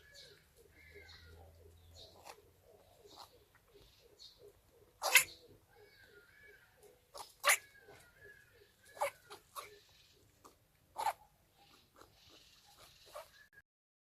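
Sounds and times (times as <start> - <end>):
rabbit sneezing: 5.0 - 5.4, 7.1 - 7.8, 11.0 - 13.4.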